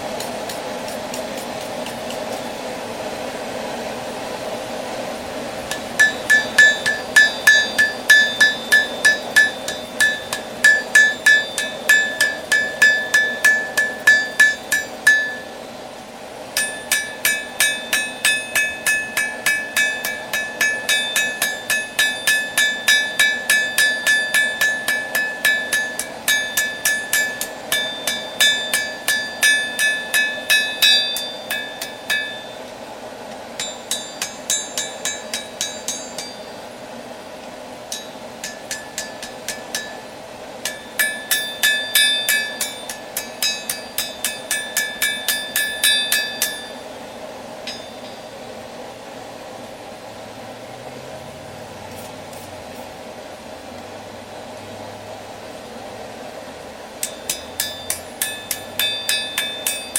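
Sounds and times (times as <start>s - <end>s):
steady background hum: 0.0s - 59.9s
hammer striking metal on anvil: 5.7s - 15.6s, 16.6s - 32.8s, 33.6s - 36.7s, 37.9s - 47.0s, 47.6s - 48.4s, 57.0s - 59.9s.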